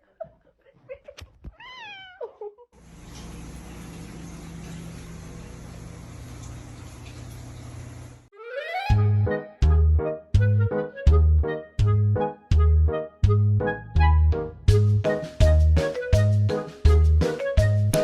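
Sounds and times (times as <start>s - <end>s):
cat meowing: 1.5s - 2.3s.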